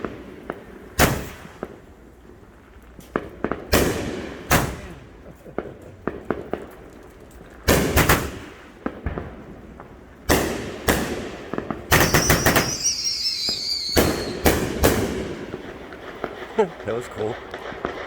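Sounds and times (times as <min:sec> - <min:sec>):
fireworks bangs: 0:00.0 - 0:18.0
downward gliding firework whistle: 0:12.0 - 0:16.6.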